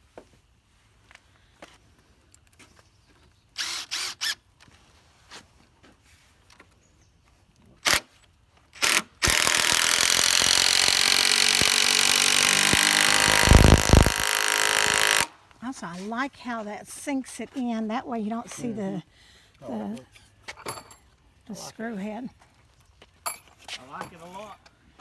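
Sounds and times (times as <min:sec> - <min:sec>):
cordless drill driving screw: 0:03.6 - 0:04.4, 0:07.8 - 0:08.1, 0:08.8 - 0:15.3.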